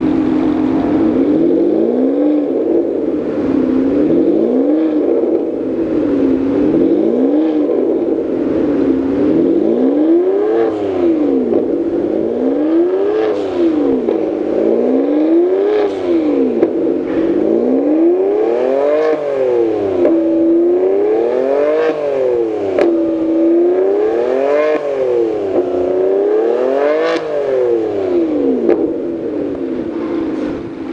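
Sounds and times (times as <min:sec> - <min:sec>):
car engine revving: 0:00.0 - 0:30.9.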